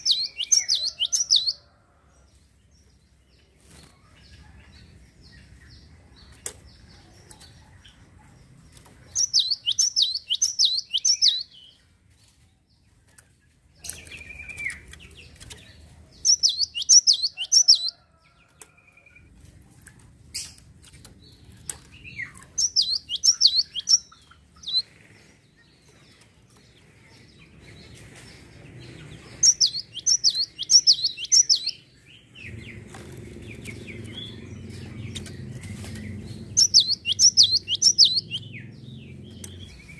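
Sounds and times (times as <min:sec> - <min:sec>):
songbird singing: 0:00.0 - 0:39.9
low rumble: 0:31.9 - 0:39.9.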